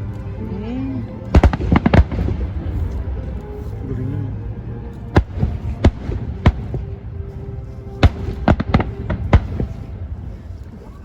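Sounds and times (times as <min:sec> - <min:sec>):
low rumble: 0:00.0 - 0:11.0
fireworks bangs: 0:01.4 - 0:03.0, 0:08.0 - 0:10.1.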